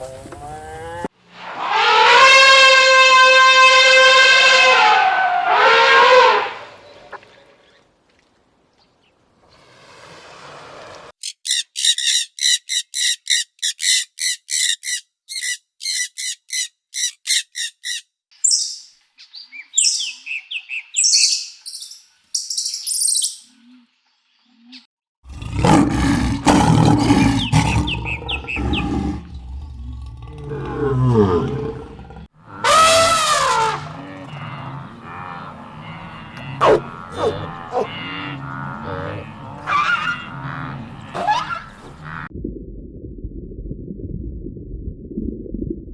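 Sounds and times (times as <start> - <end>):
bird chirping quickly: 11.2 - 23.5
scattered bird calls: 11.2 - 23.7, 25.6 - 29.7, 32.5 - 42.3
low animal call: 25.3 - 42.3.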